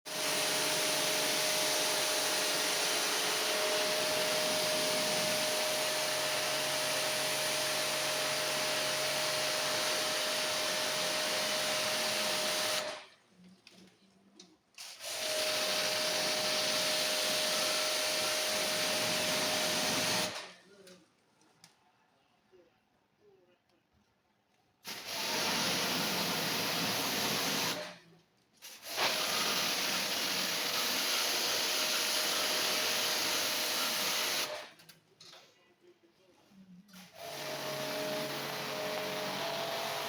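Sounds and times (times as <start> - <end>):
cleaning tool hissing with high whine: 3.9 - 8.2.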